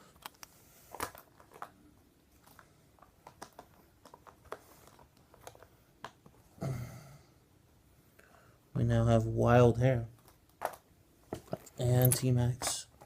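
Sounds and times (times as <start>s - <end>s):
small objects clicking and tapping: 2.4s - 6.4s, 10.2s - 13.0s.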